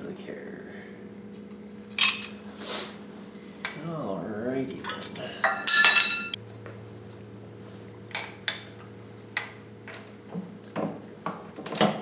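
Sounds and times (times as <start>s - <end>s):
steady low hum: 0.0s - 8.2s
metal tools clinking: 2.0s - 2.4s, 4.7s - 6.4s.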